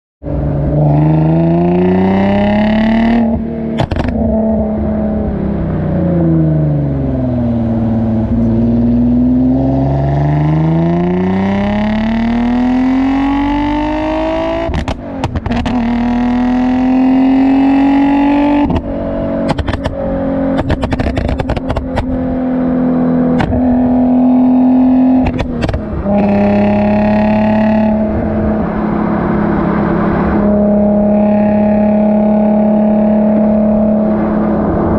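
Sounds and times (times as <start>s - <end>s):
car engine revving: 0.2s - 34.9s
exhaust crackles and pops: 3.8s - 4.2s, 14.7s - 15.8s, 18.6s - 22.2s, 23.4s - 23.6s, 25.2s - 26.3s.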